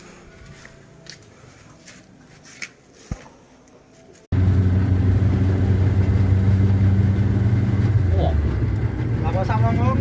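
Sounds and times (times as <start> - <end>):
vehicle engine running: 4.3 - 10.0.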